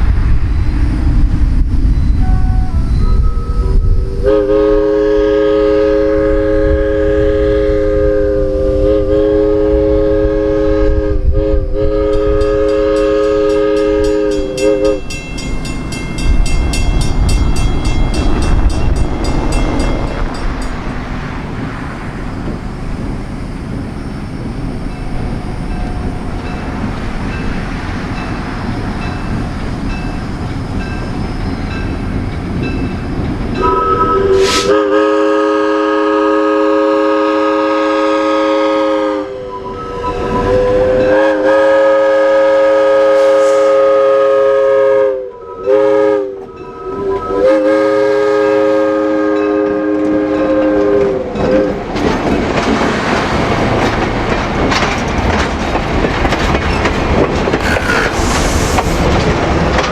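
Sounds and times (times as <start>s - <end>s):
train rumbling past: 0.0s - 59.9s
locomotive air horn chord: 2.3s - 15.2s, 33.6s - 51.8s.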